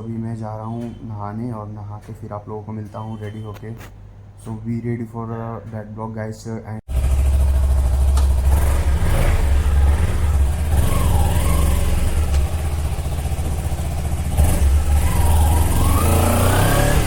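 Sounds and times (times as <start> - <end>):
motorcycle engine: 6.9 - 17.0.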